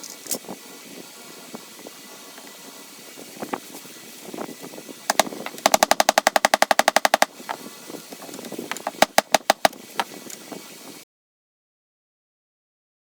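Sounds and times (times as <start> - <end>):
hammer tapping on metal: 5.1 - 7.6, 8.2 - 10.1.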